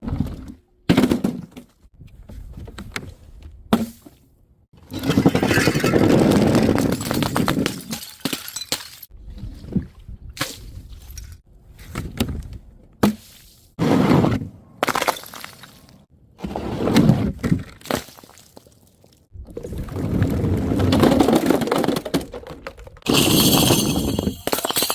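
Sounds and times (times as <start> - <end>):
glass bottles smashing: 6.8 - 9.1, 23.1 - 24.9.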